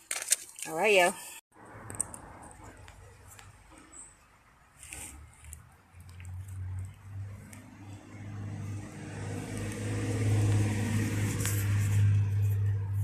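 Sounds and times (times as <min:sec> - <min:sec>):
vehicle engine hum passing: 0:01.5 - 0:13.0.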